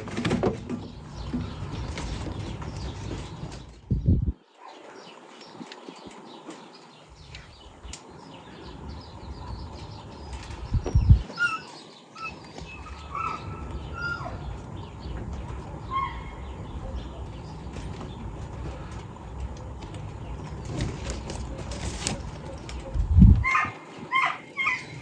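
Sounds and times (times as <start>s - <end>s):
birds chirping: 0.0s - 25.0s.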